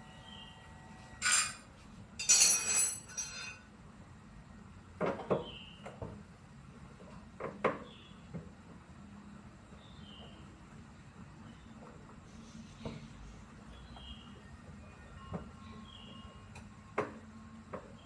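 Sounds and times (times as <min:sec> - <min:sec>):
metal tools clinking and knocking: 0:01.2 - 0:01.6, 0:02.2 - 0:03.6.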